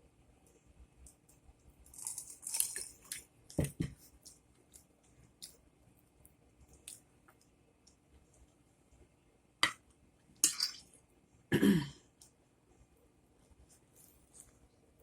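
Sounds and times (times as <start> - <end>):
person chewing food: 1.8 - 5.6.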